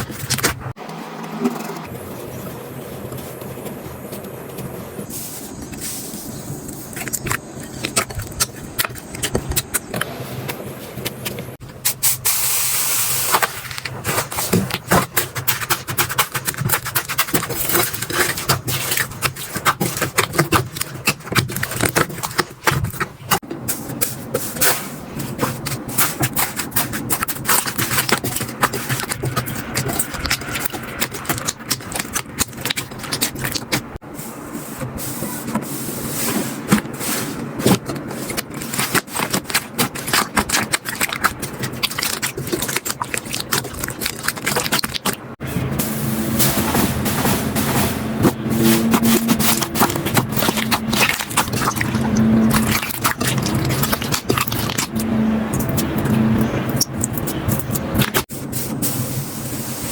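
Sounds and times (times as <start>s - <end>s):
hands squishing slime: 13.2s - 34.0s, 36.2s - 45.3s, 46.7s - 58.3s.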